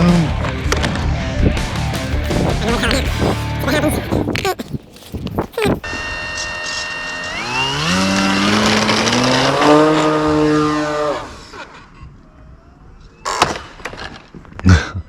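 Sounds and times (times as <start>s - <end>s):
electric motor and propeller whining: 5.8s - 11.8s.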